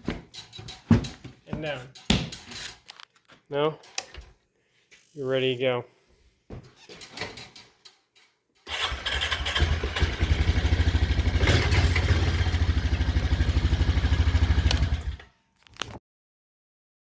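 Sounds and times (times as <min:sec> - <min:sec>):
engine starting and idling: 0:08.7 - 0:15.3.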